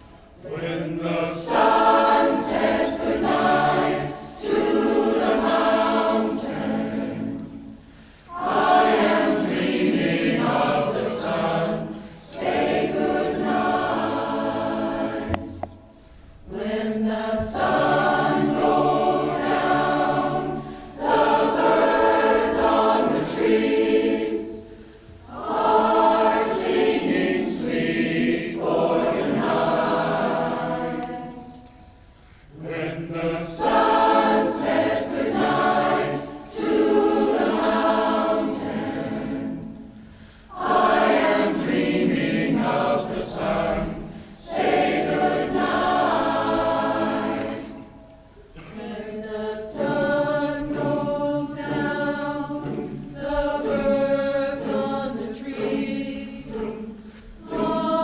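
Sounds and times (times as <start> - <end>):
choir singing: 0.0 - 15.8, 16.4 - 58.0.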